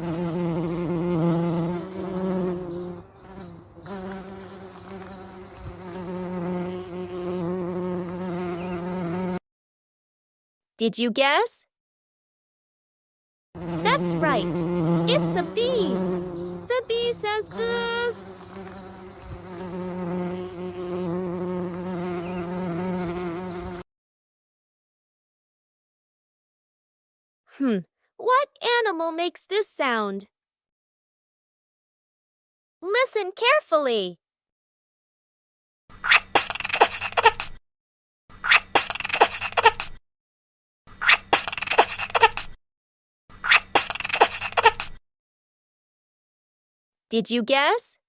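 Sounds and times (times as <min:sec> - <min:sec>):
bee buzzing: 0:00.0 - 0:09.4, 0:13.6 - 0:23.8.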